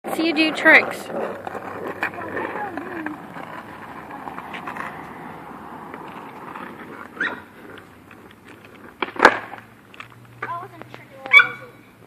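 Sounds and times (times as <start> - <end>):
dog yelp: 7.2 - 7.4, 11.3 - 11.7.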